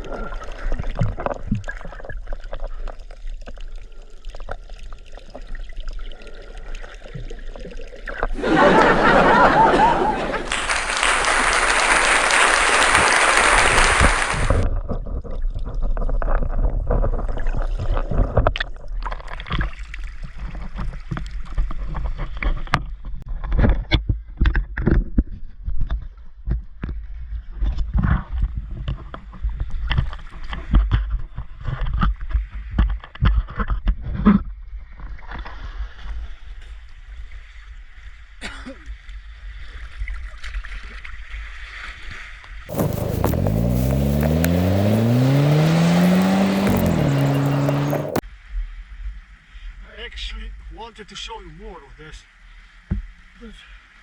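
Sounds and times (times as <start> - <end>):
loud rush of water: 10.5 - 14.6.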